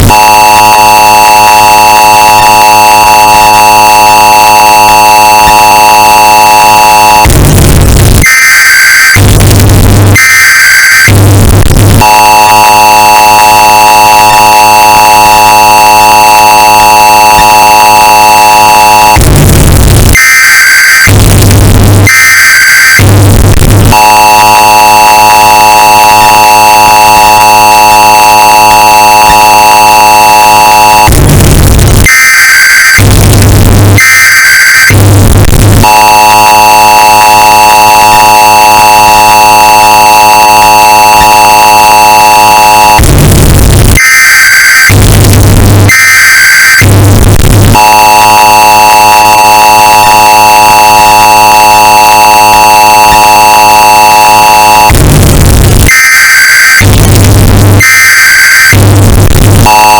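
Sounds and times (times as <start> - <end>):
distorted two-tone alert signal: 0.0 - 55.2, 56.0 - 59.9
screeching data bursts: 0.2 - 7.2, 12.0 - 19.5, 23.9 - 31.1, 35.8 - 43.0, 44.1 - 54.9, 56.3 - 59.9.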